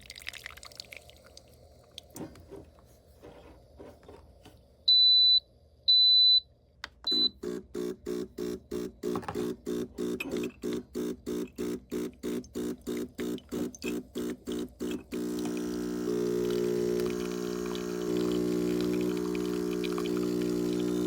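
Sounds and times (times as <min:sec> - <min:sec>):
espresso machine beeping: 0:07.1 - 0:21.0
pump running in rhythmic pulse: 0:07.4 - 0:21.0.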